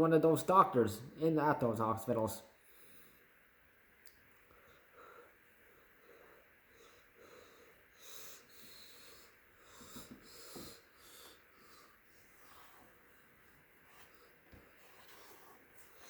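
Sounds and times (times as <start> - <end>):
soft breaths: 2.6 - 3.6, 4.3 - 16.0.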